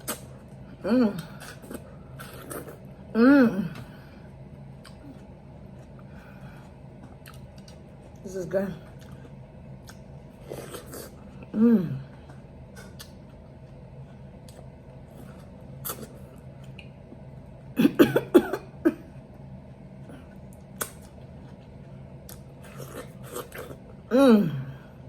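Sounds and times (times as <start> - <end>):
person coughing: 17.8 - 19.1.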